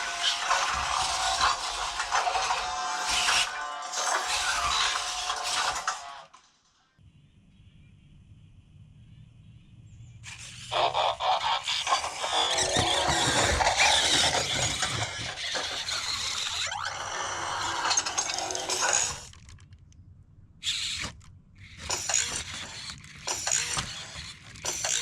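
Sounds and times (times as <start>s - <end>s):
robot toy servo motors whirring: 0.0s - 6.4s, 10.2s - 19.6s, 20.6s - 25.0s
mechanical clattering: 11.4s - 19.9s, 20.6s - 25.0s
rising motor whine: 11.6s - 19.3s.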